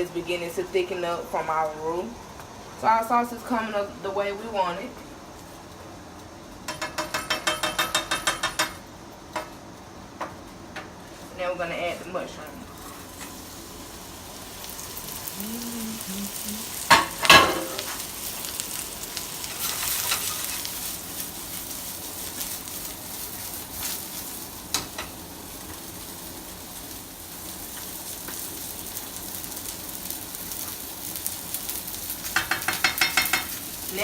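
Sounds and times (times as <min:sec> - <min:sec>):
mushrooms sizzling in a pan: 0:11.0 - 0:34.0.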